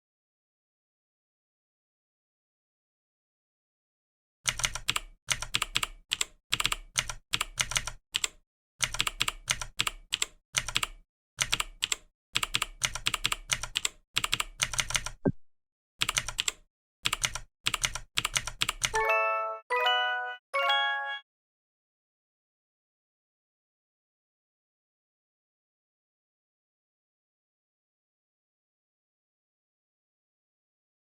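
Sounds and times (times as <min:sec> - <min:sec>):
computer keyboard typing: 0:04.5 - 0:15.3, 0:16.0 - 0:19.0.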